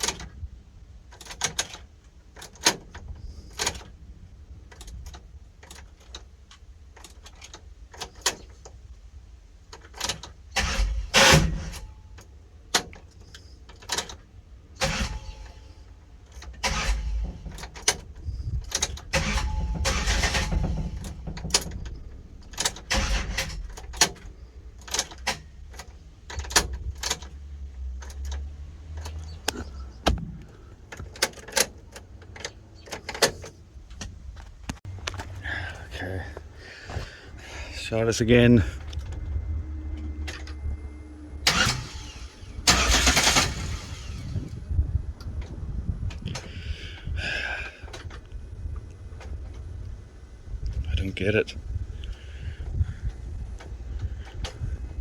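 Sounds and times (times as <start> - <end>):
sharp clicks and knocks: 0.0 - 0.5, 1.1 - 4.0, 9.6 - 15.6, 16.2 - 35.4
car engine cranking: 0.0 - 55.0.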